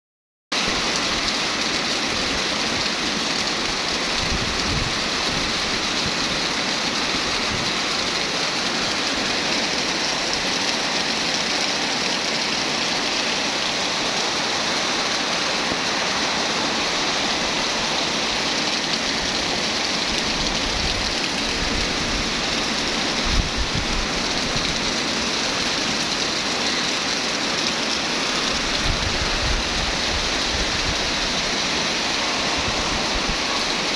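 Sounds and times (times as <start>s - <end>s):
heavy rain pouring: 0.6s - 33.9s
wind rumble on microphone: 4.2s - 6.2s, 23.2s - 24.8s, 28.6s - 33.9s.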